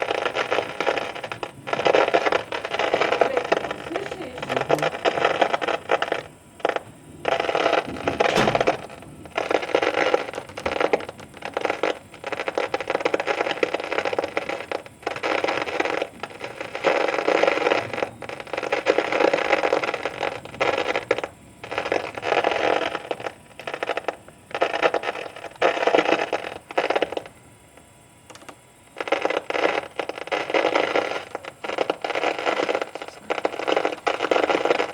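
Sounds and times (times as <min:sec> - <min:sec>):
rain hissing: 0:00.0 - 0:27.4, 0:29.0 - 0:34.9.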